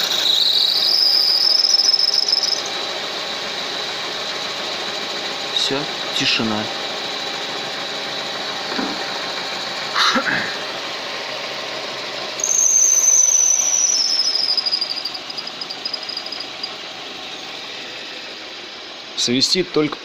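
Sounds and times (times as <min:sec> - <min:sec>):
high-pitched whistle: 0:00.0 - 0:02.7, 0:12.4 - 0:16.8
car engine running: 0:10.6 - 0:19.2.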